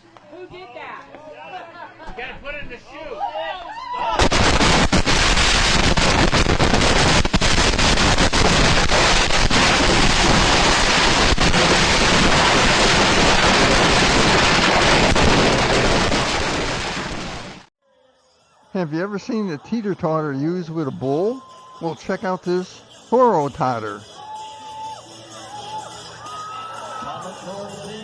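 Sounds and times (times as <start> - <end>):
fireworks bangs and crackles: 4.2 - 17.7.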